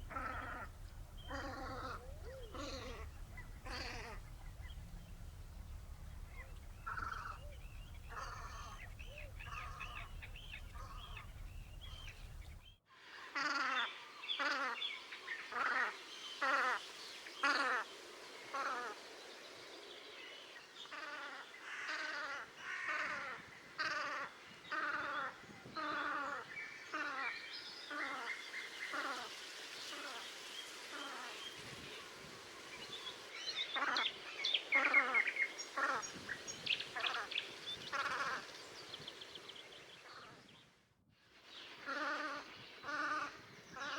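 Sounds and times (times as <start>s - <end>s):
duck calls: 0.0s - 12.5s
low steady rumble: 0.0s - 12.7s.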